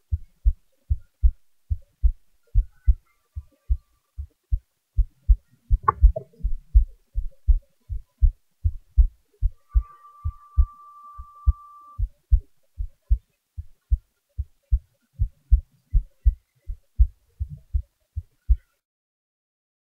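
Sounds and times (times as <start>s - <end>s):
heartbeat thumps: 0.1s - 18.6s
faint high tone: 9.0s - 12.4s.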